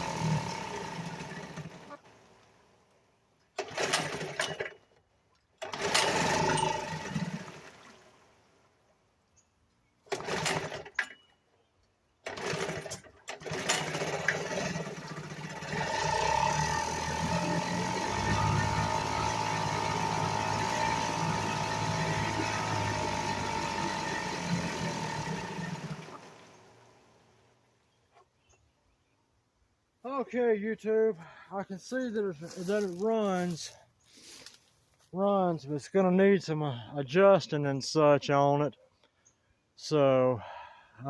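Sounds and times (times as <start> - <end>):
outboard motor pull-starting: 0.0 - 2.2, 3.5 - 8.3, 10.0 - 11.3, 12.2 - 27.4, 32.4 - 34.6.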